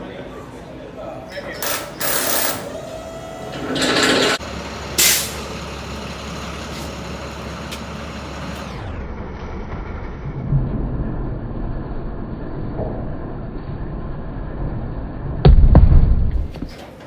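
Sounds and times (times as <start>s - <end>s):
truck engine idling: 1.4s - 9.0s
air brake hissing: 2.3s - 8.7s.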